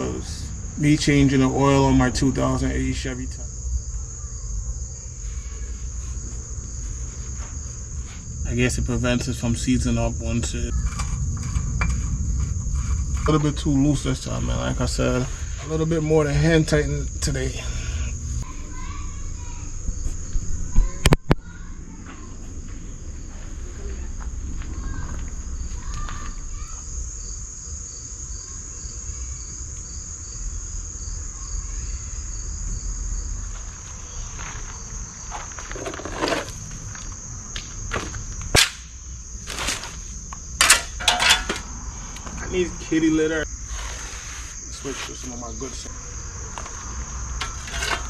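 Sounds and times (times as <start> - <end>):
crickets trilling: 0.0 - 48.0
low rumble: 7.8 - 25.7
clinks: 40.6 - 41.7.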